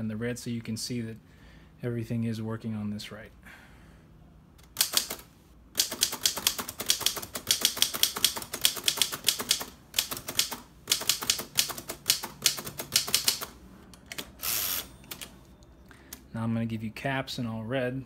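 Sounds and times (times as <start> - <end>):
typewriter typing: 4.7 - 15.4.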